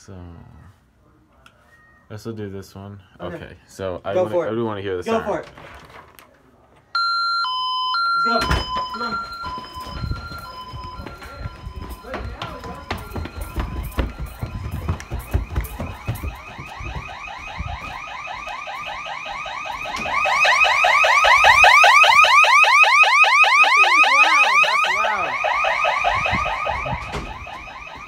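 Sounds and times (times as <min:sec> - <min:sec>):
security alarm siren sweeps: 0:07.0 - 0:28.0.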